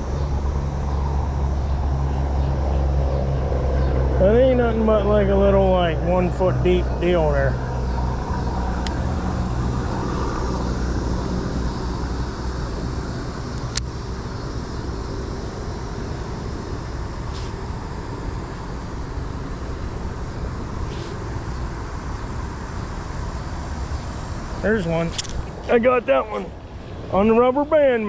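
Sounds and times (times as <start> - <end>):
low rumbling hiss: 0.0 - 28.0
sharp click: 25.1 - 25.5.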